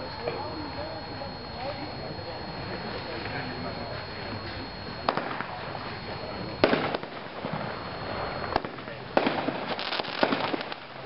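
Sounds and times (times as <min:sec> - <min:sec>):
firework bangs and crackles: 0:05.0 - 0:11.0
firework shots: 0:05.0 - 0:11.0.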